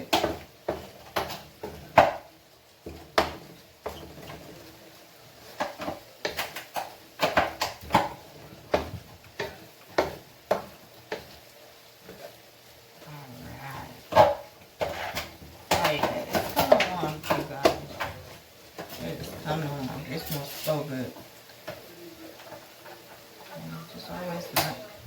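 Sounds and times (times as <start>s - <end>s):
utensil tapping against frying pan: 0.0s - 4.3s, 5.5s - 11.4s.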